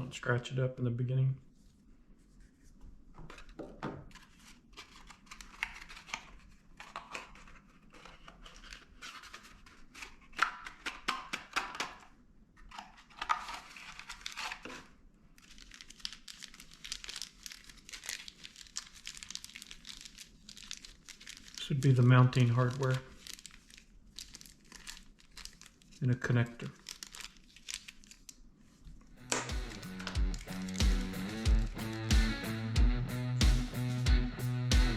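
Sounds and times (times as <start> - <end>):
plastic packaging crinkling: 3.3 - 10.4, 12.7 - 30.8.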